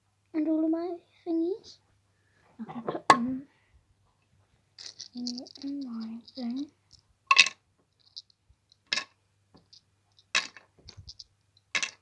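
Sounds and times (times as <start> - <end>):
light ticks and rattles: 4.1 - 12.0
awards clinking into container: 4.8 - 6.7.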